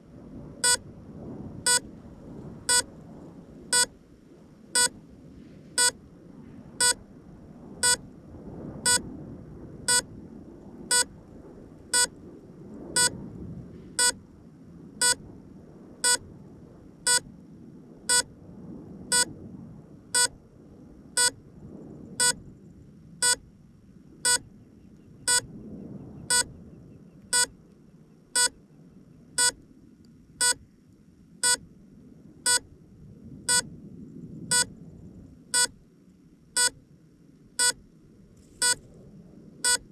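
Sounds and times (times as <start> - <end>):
low rumbling noise: 0.0 - 39.9
short high electronic beeps: 7.8 - 8.0, 17.1 - 17.3, 25.3 - 25.5, 28.4 - 28.6, 36.6 - 36.8, 39.7 - 39.9.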